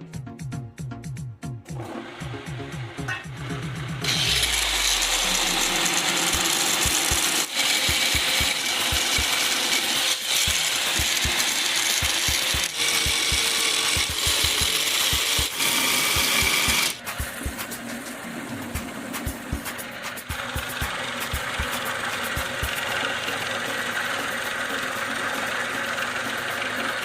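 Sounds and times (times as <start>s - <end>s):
lathe tool scraping wood: 4.0s - 17.1s.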